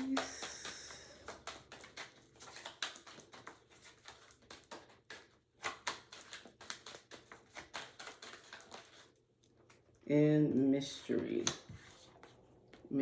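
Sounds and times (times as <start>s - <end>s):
cards being shuffled: 0.0s - 9.1s.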